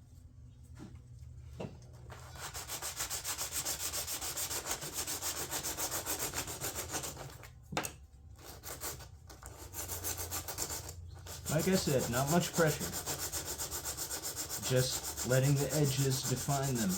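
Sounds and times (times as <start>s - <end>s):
hand sanding panel: 2.3s - 7.2s, 9.7s - 16.9s.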